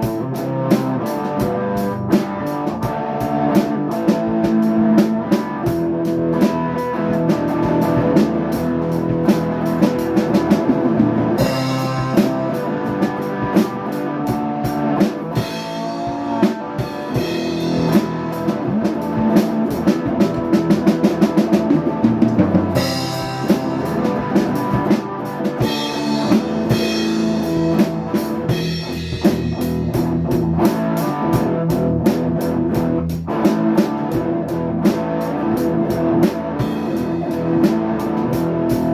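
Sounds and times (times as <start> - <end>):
instrumental rock music: 0.0 - 38.9
quick drum hits: 3.6 - 32.5.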